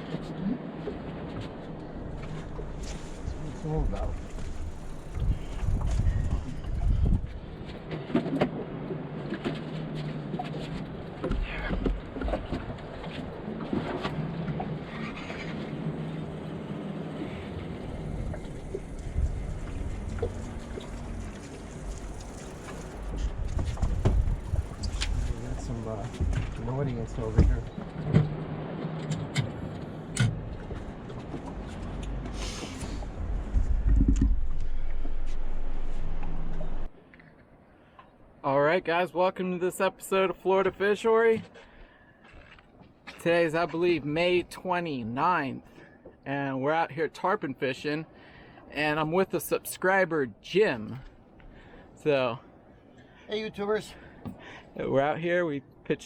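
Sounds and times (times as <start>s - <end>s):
water lapping against boat hull: 0.0s - 38.4s, 54.0s - 54.8s
wind on microphone: 2.0s - 7.9s, 17.1s - 28.5s, 29.6s - 36.9s
steady low hum: 15.7s - 28.5s, 29.5s - 36.9s.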